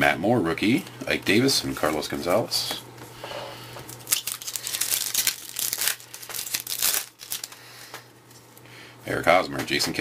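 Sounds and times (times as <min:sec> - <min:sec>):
foil wrapper crinkling and tearing: 0:03.8 - 0:08.0.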